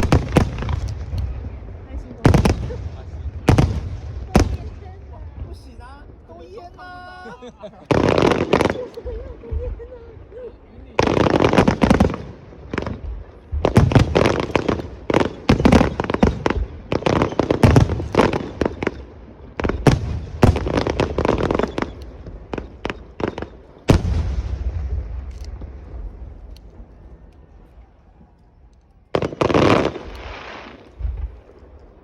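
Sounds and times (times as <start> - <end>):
firework shells bursting: 0.0 - 6.3, 7.9 - 9.8, 11.0 - 27.8
large firework boom: 23.9 - 26.4, 30.9 - 31.6.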